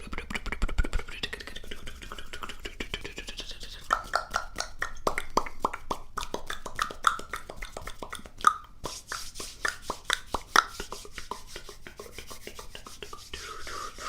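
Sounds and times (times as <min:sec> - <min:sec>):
wet mouth clicks and pops: 0:03.8 - 0:10.8.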